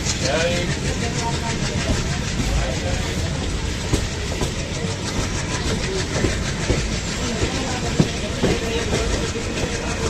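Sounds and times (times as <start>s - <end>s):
train coach rumbling on track: 0.0s - 10.0s.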